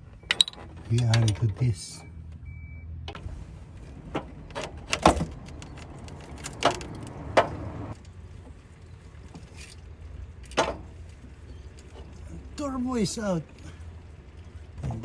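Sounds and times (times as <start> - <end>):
clanks of tools and metal parts: 0.0 - 2.1, 10.4 - 12.2.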